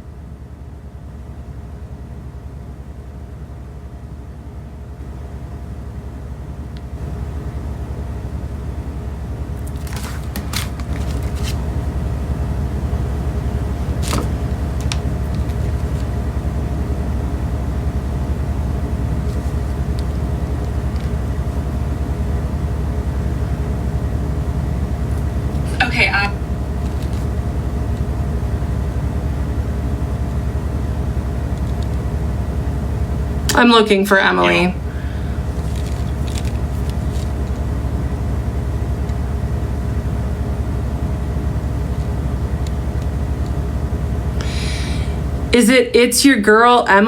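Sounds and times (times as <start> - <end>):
faint hum: 0.0 - 47.0
steady low rumble: 10.6 - 47.0.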